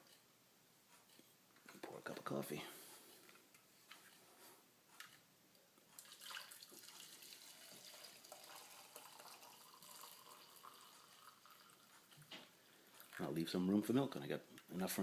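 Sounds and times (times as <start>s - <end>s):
coffee pouring into a cup: 6.0s - 12.2s.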